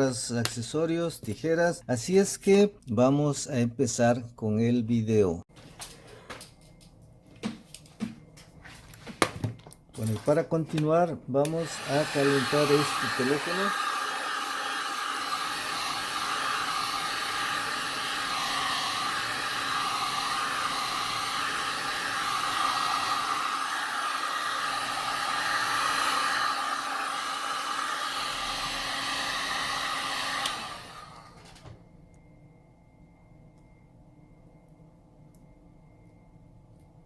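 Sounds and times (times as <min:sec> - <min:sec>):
hot-air blower rushing air: 0:11.4 - 0:31.6.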